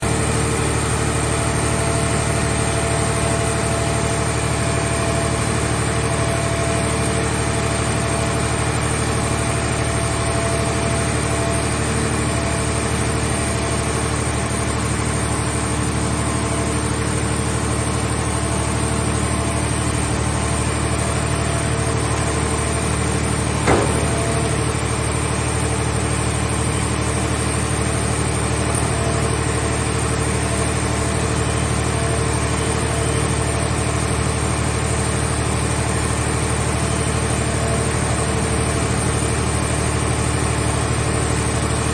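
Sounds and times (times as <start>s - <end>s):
hydraulic power unit running: 0.0s - 41.9s
short knock: 23.6s - 24.7s.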